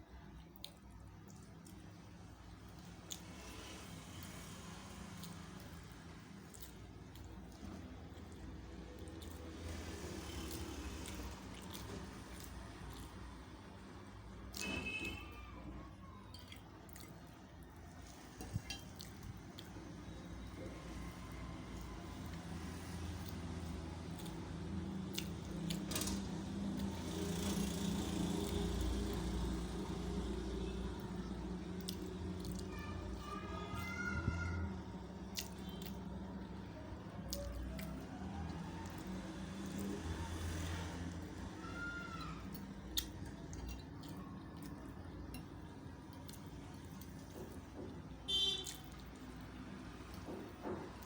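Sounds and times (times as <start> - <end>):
low mechanical hum: 0.0 - 51.0.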